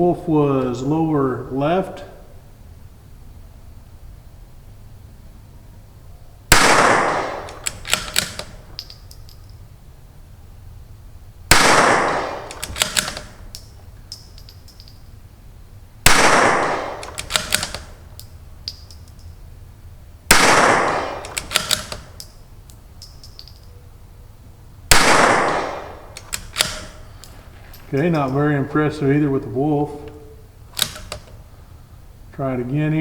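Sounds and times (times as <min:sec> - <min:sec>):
rifle shots: 0:06.5 - 0:08.9, 0:11.5 - 0:13.8, 0:16.0 - 0:18.1, 0:20.3 - 0:22.3, 0:24.9 - 0:31.6
rifle bolt clicking: 0:06.5 - 0:09.6, 0:11.5 - 0:15.1, 0:16.1 - 0:19.3, 0:20.3 - 0:23.8, 0:24.9 - 0:28.4, 0:30.1 - 0:31.4.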